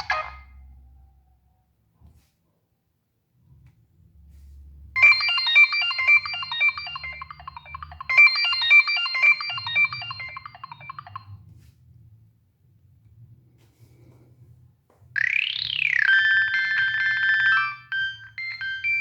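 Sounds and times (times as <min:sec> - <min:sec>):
polyphonic phone ringtone: 0:00.0 - 0:00.4, 0:05.0 - 0:11.3, 0:15.2 - 0:19.0.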